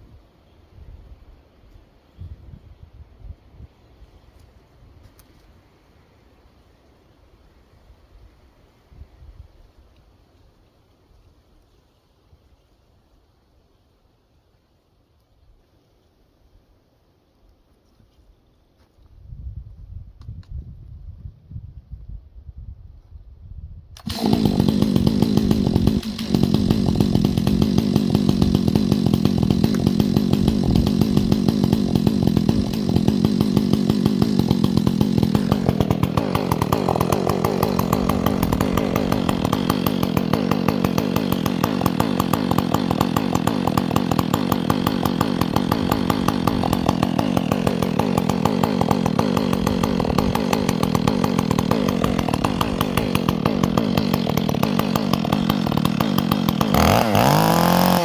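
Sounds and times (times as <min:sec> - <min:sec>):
chainsaw cutting wood: 0:24.0 - 0:58.0.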